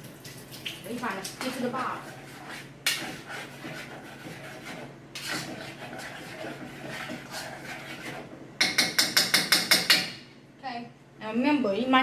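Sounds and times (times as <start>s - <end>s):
spoon scraping bottom of pot: 1.8s - 9.5s.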